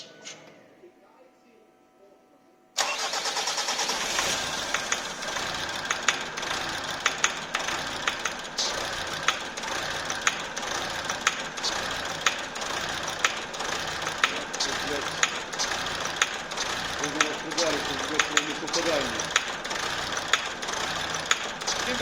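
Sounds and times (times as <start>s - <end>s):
diesel engine idling: 2.8s - 22.0s
sharp engine knocks: 4.6s - 22.0s.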